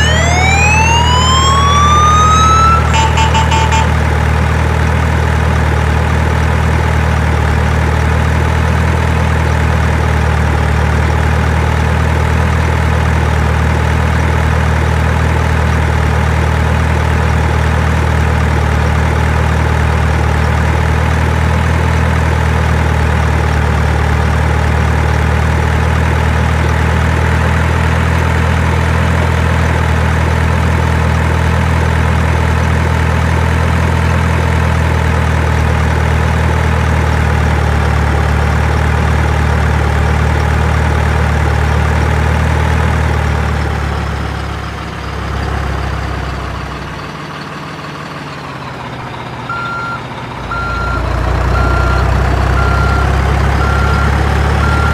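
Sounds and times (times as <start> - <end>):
truck reversing beeper: 0.0 - 4.4, 44.3 - 54.9
heavy truck engine idling: 0.0 - 54.9.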